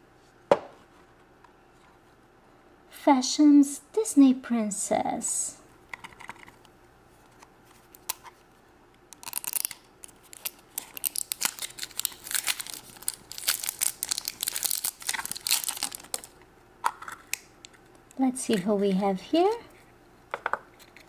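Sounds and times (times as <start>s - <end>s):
plastic wrapper crinkling: 9.2s - 19.9s.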